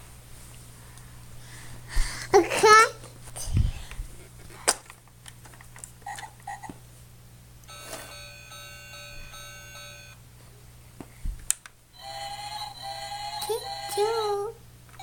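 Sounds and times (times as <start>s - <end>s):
toy beeping electronic tune: 7.7s - 10.2s, 12.0s - 14.2s.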